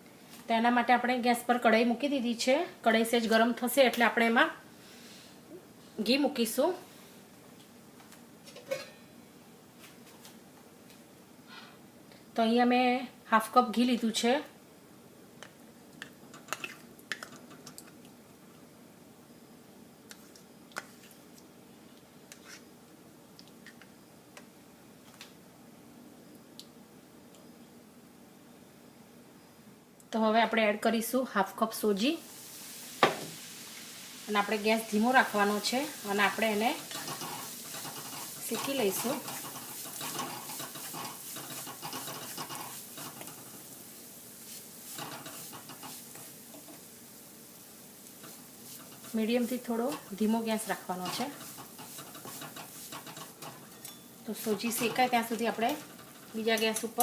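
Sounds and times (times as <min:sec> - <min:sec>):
faint background hum: 0:00.0 - 0:57.0
light sizzle: 0:00.0 - 0:57.0
spoon scraping and stirring: 0:20.1 - 0:21.2, 0:22.3 - 0:22.7, 0:36.4 - 0:43.6, 0:44.4 - 0:46.8, 0:48.1 - 0:57.0.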